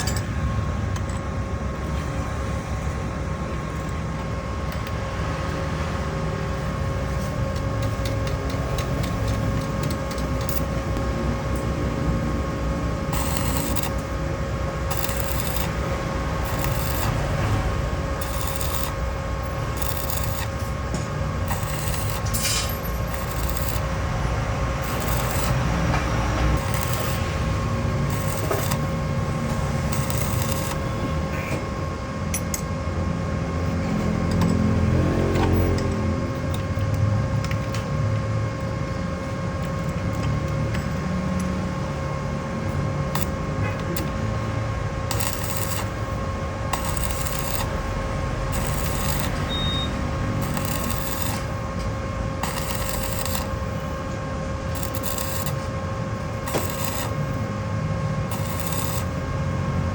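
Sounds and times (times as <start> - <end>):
steady hum: 0.0 - 35.0, 36.0 - 59.9
tools scraping on metal: 13.1 - 14.0, 16.4 - 23.9, 24.8 - 27.4, 48.5 - 51.8, 56.5 - 57.2, 58.3 - 59.1.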